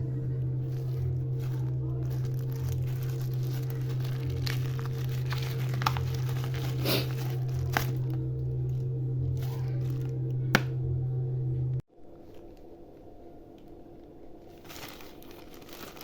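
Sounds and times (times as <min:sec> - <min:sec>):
steady low hum: 0:00.0 - 0:16.0
plastic crinkling and tearing: 0:00.6 - 0:10.2, 0:14.5 - 0:16.0.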